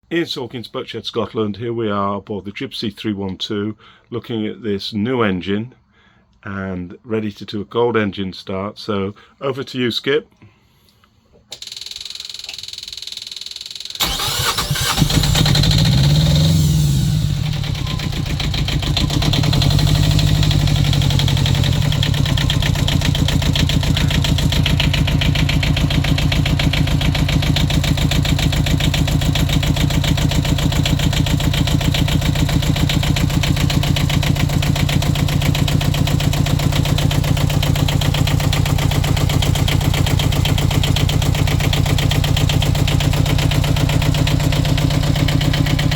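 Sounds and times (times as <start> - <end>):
boat engine starting and idling: 14.0 - 45.9.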